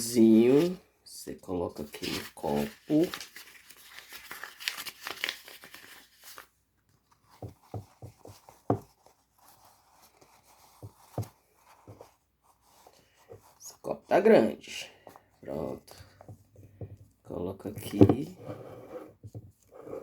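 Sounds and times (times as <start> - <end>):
plastic rustling and crinkling: 1.8 - 12.1.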